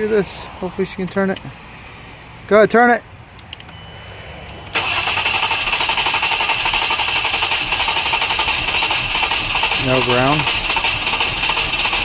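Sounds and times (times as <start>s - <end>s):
engine cranking on starter: 4.7s - 12.0s.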